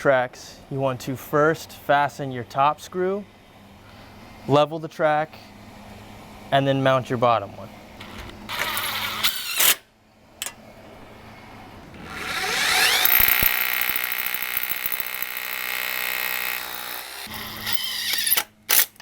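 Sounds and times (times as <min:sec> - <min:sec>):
power drill driving a screw: 0:08.5 - 0:09.8, 0:12.0 - 0:19.0.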